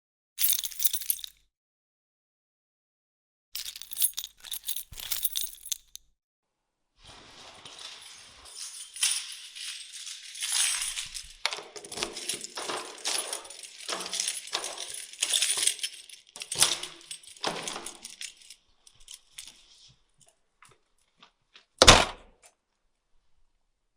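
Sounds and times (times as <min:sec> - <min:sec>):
keys clattering: 0:00.4 - 0:01.4, 0:03.6 - 0:06.0, 0:08.1 - 0:19.6
metal keys jingling: 0:00.4 - 0:01.4, 0:03.6 - 0:06.0, 0:08.5 - 0:19.6.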